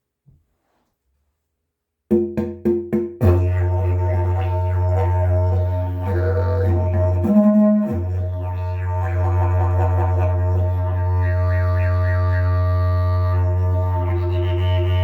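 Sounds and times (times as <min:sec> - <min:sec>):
didgeridoo drone: 0:03.2 - 0:15.0.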